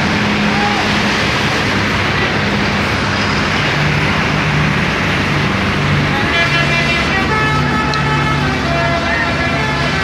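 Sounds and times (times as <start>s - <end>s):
loud steady din: 0.0s - 10.0s
musical air horns playing tune: 6.3s - 10.0s.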